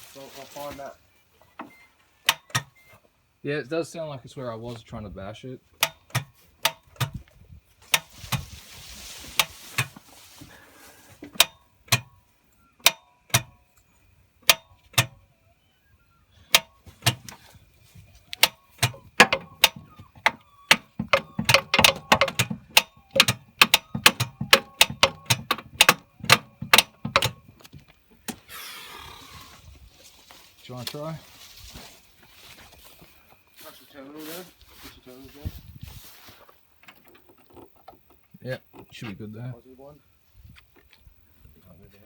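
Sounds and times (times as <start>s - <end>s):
hammer striking metal: 18.4s - 19.9s, 20.7s - 27.4s.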